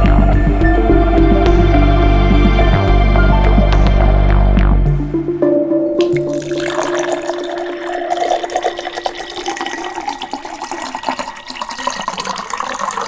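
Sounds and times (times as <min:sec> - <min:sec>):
fountain water splashing: 0:06.0 - 0:13.0.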